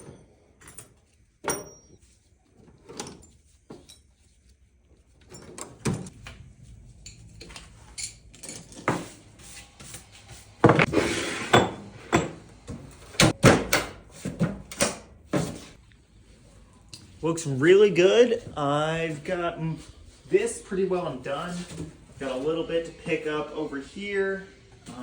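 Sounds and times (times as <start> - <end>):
metal tools clinking: 0.0 - 2.0, 2.9 - 4.3, 5.2 - 6.2, 6.8 - 9.2
toolbox drawers sliding: 10.6 - 12.4.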